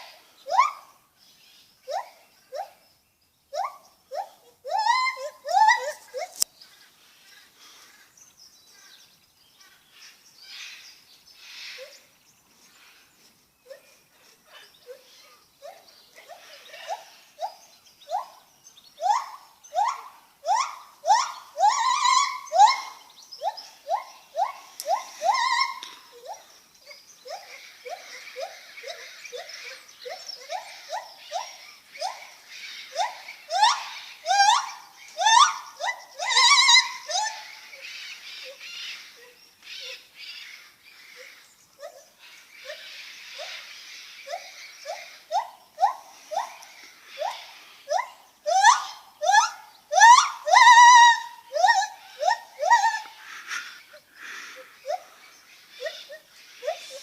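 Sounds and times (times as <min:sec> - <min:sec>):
gibbon whooping calls: 0:00.0 - 0:00.9, 0:03.5 - 0:06.4, 0:14.6 - 0:18.4, 0:19.0 - 0:40.1, 0:41.2 - 0:57.0.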